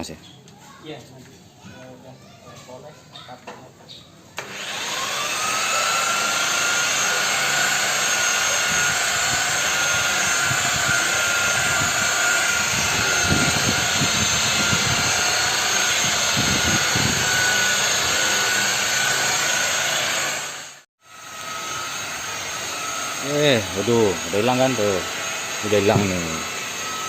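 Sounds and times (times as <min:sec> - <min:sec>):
car polishing machine whining: 0:04.4 - 0:27.0.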